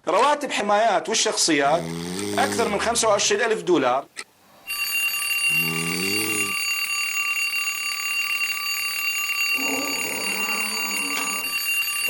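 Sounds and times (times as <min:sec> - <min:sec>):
person snoring: 0:01.6 - 0:03.0, 0:05.5 - 0:06.6.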